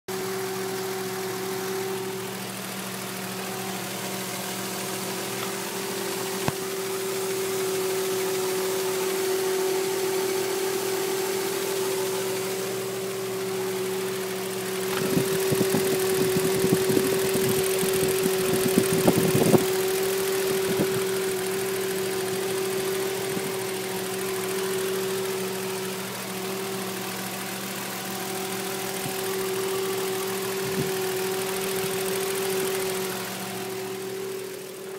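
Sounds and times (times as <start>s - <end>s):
rapid clicking and rattling: 14.7s - 24.6s.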